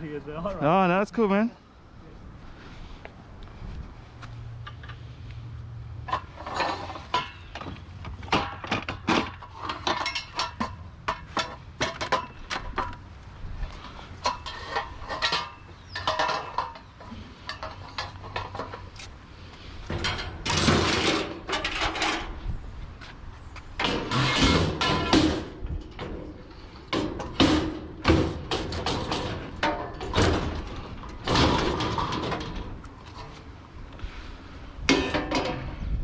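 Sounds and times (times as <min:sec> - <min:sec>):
scrap objects knocking and clanking: 0:06.0 - 0:13.0, 0:13.7 - 0:22.4, 0:23.8 - 0:33.5, 0:34.8 - 0:35.8.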